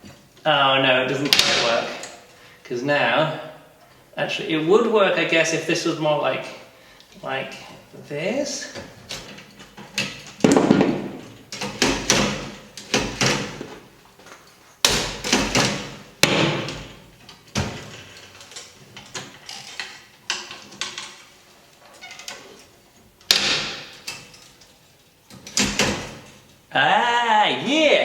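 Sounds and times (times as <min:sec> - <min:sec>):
machine frame knocks and rattles: 0:08.7 - 0:13.9, 0:14.8 - 0:21.2.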